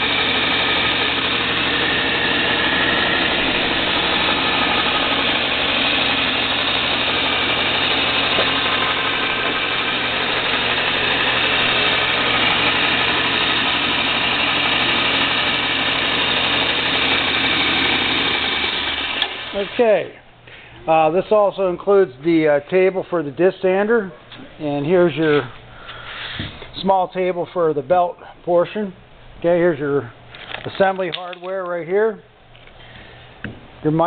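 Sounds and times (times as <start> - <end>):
belt and disc sander running: 0.0 - 20.0.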